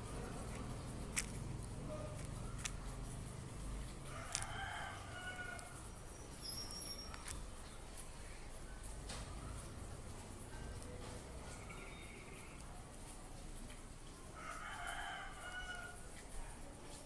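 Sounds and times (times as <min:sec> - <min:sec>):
small birds chirping: 0:00.0 - 0:14.4
sharp clicks: 0:00.4 - 0:07.8
rooster crowing faintly: 0:03.9 - 0:07.3, 0:14.3 - 0:17.0.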